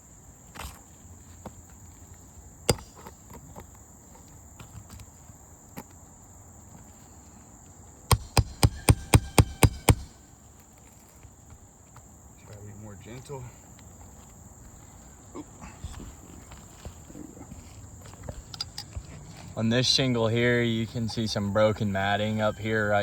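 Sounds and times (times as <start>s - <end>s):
hammer striking metal tool: 2.7s - 3.0s, 8.1s - 10.1s.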